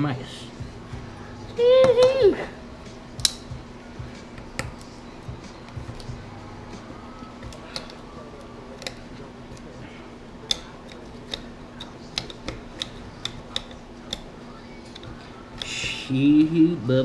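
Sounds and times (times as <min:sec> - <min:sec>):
low hum: 0:00.0 - 0:17.0
tool handling clicks and taps: 0:03.2 - 0:03.6, 0:07.4 - 0:09.7, 0:10.4 - 0:15.8.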